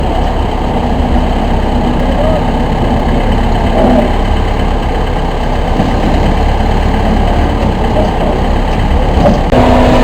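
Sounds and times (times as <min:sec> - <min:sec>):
baler engine drone: 0:00.0 - 0:10.0.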